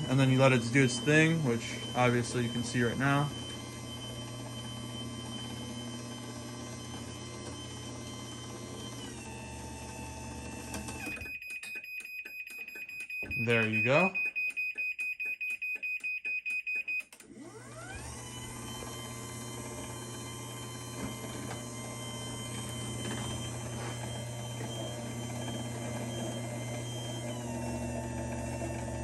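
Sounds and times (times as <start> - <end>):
motor whining and humming: 0.0 - 11.3, 17.2 - 29.0
garage door opener beeping: 0.0 - 29.0.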